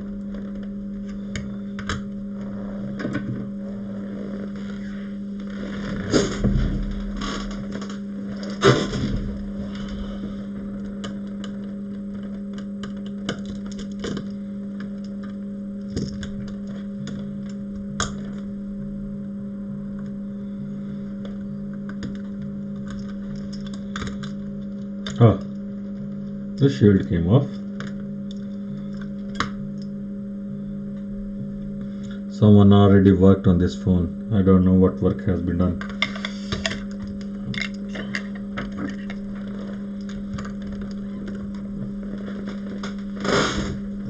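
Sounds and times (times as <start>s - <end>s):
small motor humming: 0.0s - 26.5s.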